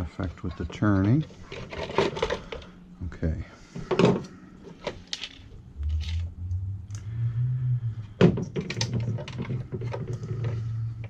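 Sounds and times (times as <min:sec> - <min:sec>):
steady low hum: 0:00.0 - 0:11.0
clicks and knocks of small parts: 0:03.9 - 0:06.3, 0:08.3 - 0:10.6.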